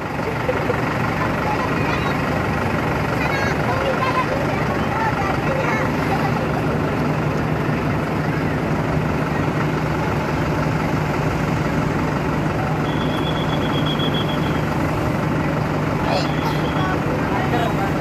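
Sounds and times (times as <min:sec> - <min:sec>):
bus engine idling: 0:00.0 - 0:18.0
faint rapid beeping: 0:12.8 - 0:14.6.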